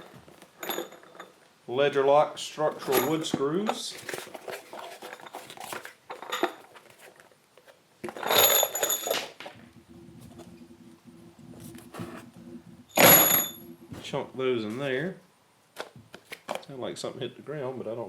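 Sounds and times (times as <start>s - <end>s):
faint low hum: 8.8s - 15.4s.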